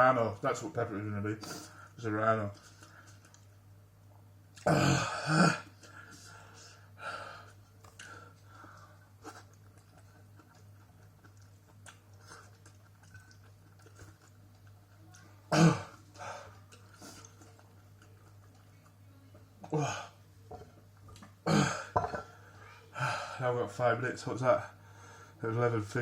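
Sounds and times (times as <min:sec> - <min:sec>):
person chewing quietly: 0:01.4 - 0:03.7, 0:05.6 - 0:21.4
loud throat sound: 0:04.6 - 0:05.7, 0:15.5 - 0:16.0, 0:21.4 - 0:22.2.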